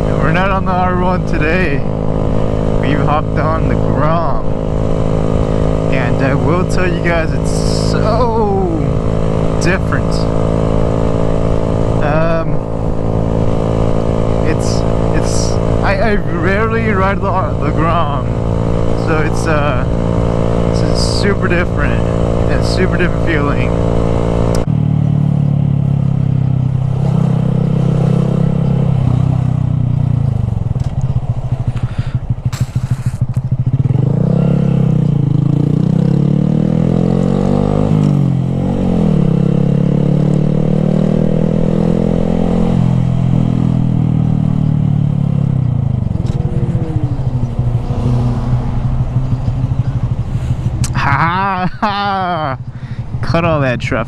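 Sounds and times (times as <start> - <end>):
motorcycle engine revving: 0.0 - 54.0.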